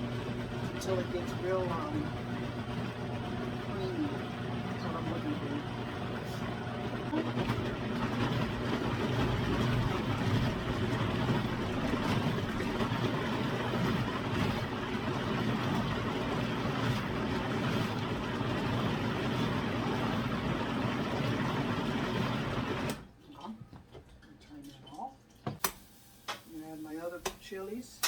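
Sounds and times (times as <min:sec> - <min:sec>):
blender motor running: 0:00.0 - 0:23.0.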